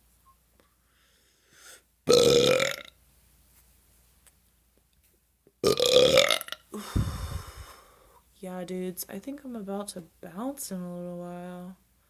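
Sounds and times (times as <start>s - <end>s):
person belching loudly: 2.1s - 2.9s, 5.6s - 6.6s.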